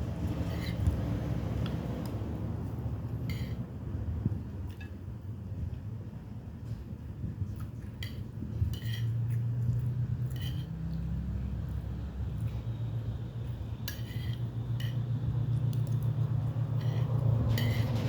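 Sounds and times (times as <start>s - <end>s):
cutlery clinking on plates: 16.8s - 18.0s.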